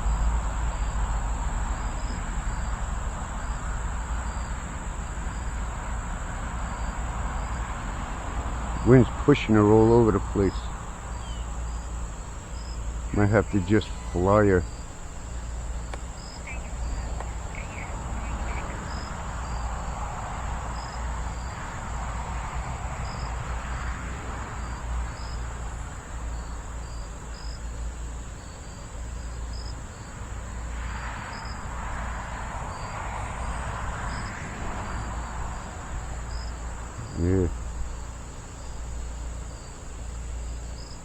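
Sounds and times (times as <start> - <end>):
wind rumbling on microphone: 0.0 - 26.5
crickets trilling: 0.0 - 41.0
insect chirps: 0.0 - 41.0.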